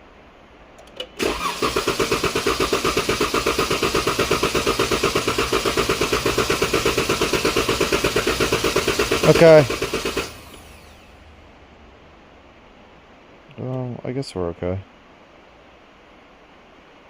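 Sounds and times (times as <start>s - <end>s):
engine cranking by starter: 0.8s - 11.3s.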